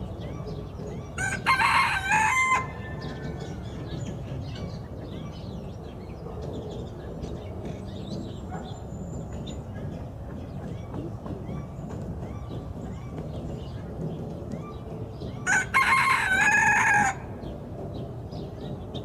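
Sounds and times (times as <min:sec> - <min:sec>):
rooster crowing: 0:01.2 - 0:03.1, 0:15.5 - 0:17.3.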